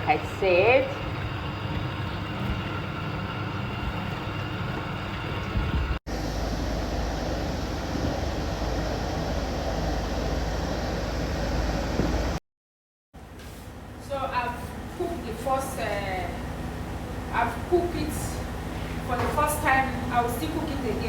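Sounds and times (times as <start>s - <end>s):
pot boiling on stove: 0.0s - 12.4s.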